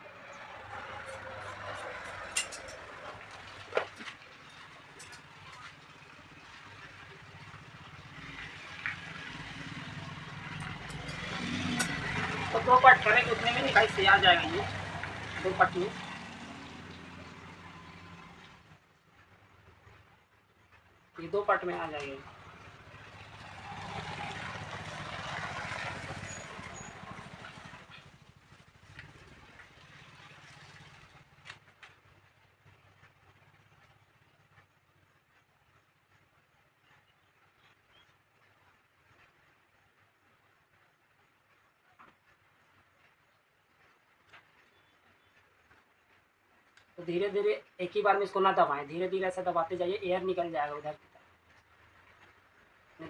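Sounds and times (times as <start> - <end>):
vehicle engine humming: 0.0 - 35.5.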